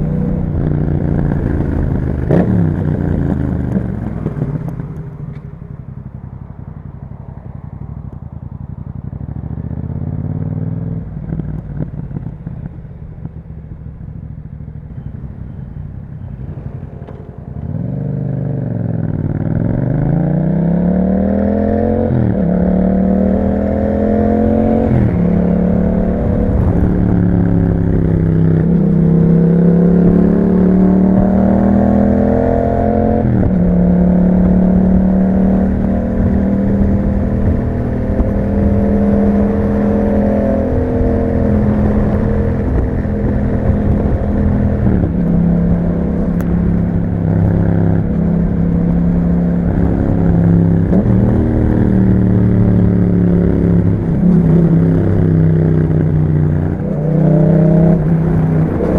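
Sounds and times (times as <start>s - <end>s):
motorcycle engine revving: 0.0s - 58.9s.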